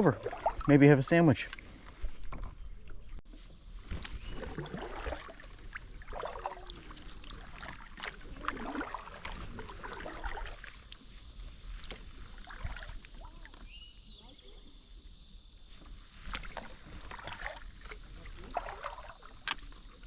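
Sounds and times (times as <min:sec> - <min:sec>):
water dripping off paddle: 0:00.0 - 0:00.8, 0:03.9 - 0:13.8, 0:16.2 - 0:20.0
paddle strokes splashing water: 0:00.0 - 0:14.3, 0:15.7 - 0:20.0.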